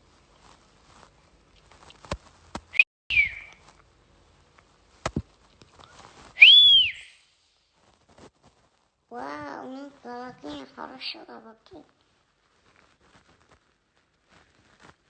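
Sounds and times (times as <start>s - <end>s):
person whistling: 3.1s - 3.6s, 6.4s - 7.2s.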